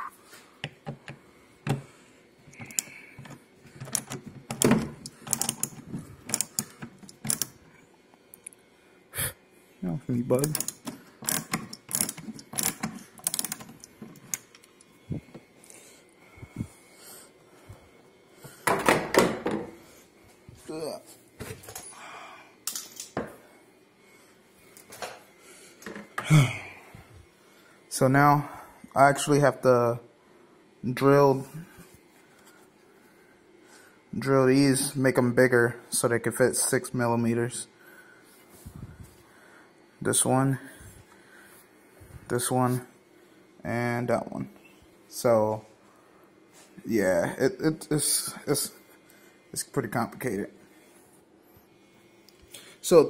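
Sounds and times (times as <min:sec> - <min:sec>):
small hardware clicks and knocks: 0:03.8 - 0:07.5, 0:10.4 - 0:14.6.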